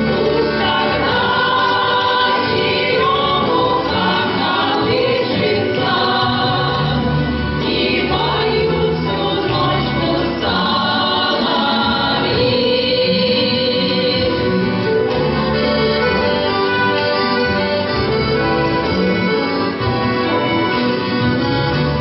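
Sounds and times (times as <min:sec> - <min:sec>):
choir singing: 0:00.0 - 0:15.4
accordion: 0:00.0 - 0:22.0.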